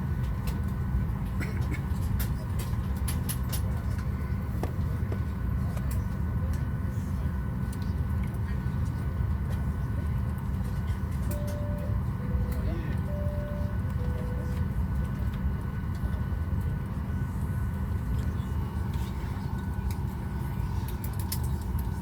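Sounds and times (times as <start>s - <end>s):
aircraft cabin rumble: 0.0s - 22.0s
faint steady whine: 6.8s - 22.0s.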